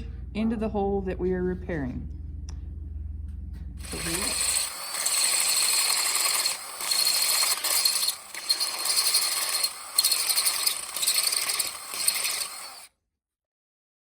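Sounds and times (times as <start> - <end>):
drill boring into metal: 3.8 - 12.9.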